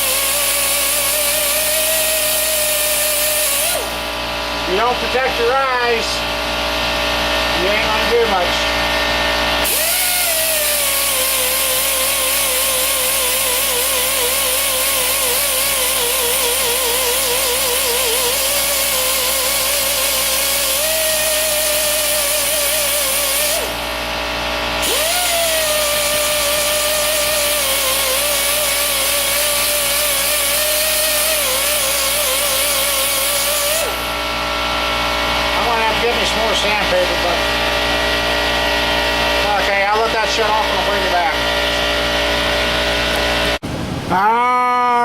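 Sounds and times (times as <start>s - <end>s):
die grinder whining on metal: 0.0s - 43.6s.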